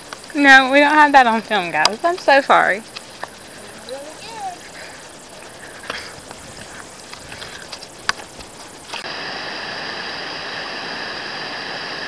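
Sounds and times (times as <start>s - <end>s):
stream water running: 0.0s - 12.0s
light clicks and crunches: 4.8s - 9.0s.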